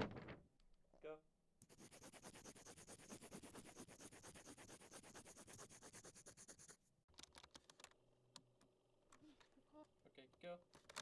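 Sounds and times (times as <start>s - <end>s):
fast scratching strokes: 1.6s - 6.8s.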